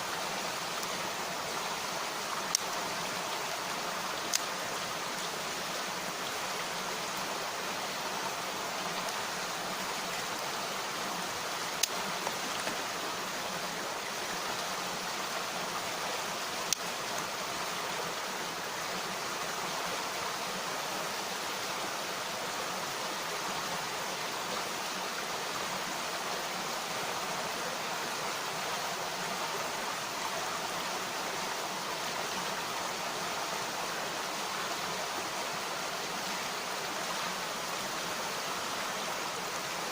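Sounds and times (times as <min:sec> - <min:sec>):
mountain stream rushing: 0:00.0 - 0:39.9
campfire popping: 0:11.8 - 0:12.8.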